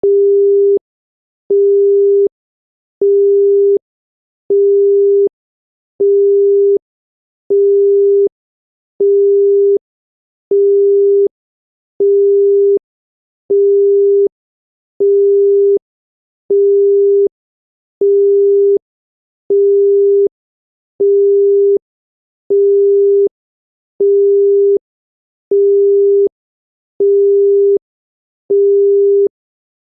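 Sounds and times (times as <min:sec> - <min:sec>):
telephone busy tone beeping: 0:00.0 - 0:00.8, 0:01.5 - 0:02.3, 0:03.0 - 0:03.8, 0:04.5 - 0:05.3, 0:06.0 - 0:06.8, 0:07.5 - 0:08.3, 0:09.0 - 0:09.8, 0:10.5 - 0:11.3, 0:12.0 - 0:12.8, 0:13.5 - 0:14.3, 0:15.0 - 0:15.8, 0:16.5 - 0:17.3, 0:18.0 - 0:18.8, 0:19.5 - 0:20.3, 0:21.0 - 0:21.8, 0:22.5 - 0:23.3, 0:24.0 - 0:24.8, 0:25.5 - 0:26.3, 0:27.0 - 0:27.8, 0:28.5 - 0:29.3.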